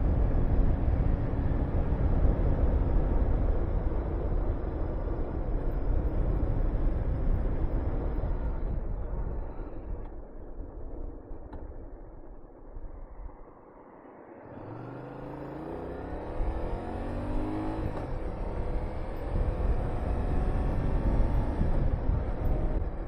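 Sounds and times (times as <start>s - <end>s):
wind rushing over microphone: 0.0s - 23.0s
motorcycle engine revving: 14.5s - 23.0s.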